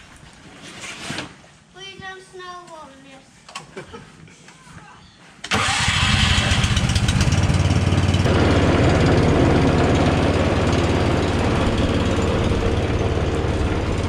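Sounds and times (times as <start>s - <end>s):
snowblower engine running: 5.5s - 14.0s.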